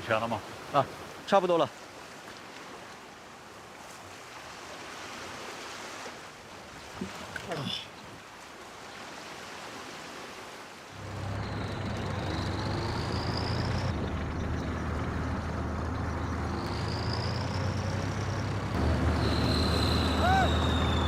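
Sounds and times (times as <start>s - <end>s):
faint gliding whine: 11.0s - 21.0s
heavy vehicle engine droning: 11.0s - 21.0s.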